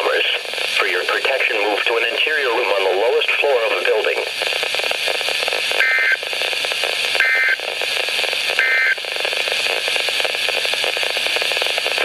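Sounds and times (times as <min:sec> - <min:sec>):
radio static: 0:00.0 - 0:12.0
buzzy two-pitch data tones: 0:05.8 - 0:06.3, 0:08.6 - 0:09.0.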